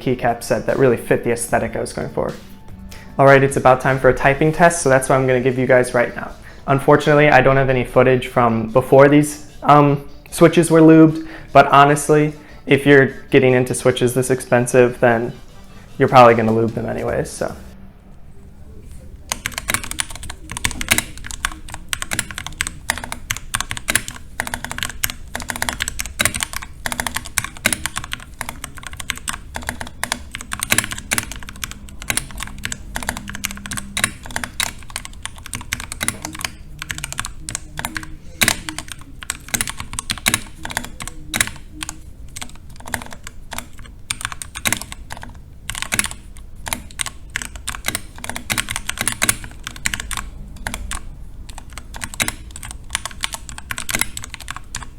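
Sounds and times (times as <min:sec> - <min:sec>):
mechanical keyboard typing: 0:19.2 - 0:54.9.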